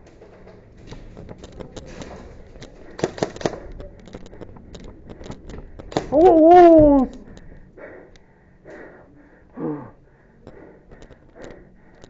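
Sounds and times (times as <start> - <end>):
airsoft guns firing: 2.8 - 3.8.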